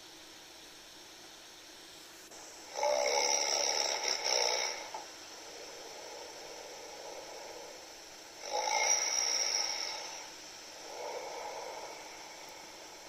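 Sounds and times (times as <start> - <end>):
steady hiss: 0.0 - 13.0
man snoring lightly: 2.6 - 13.0.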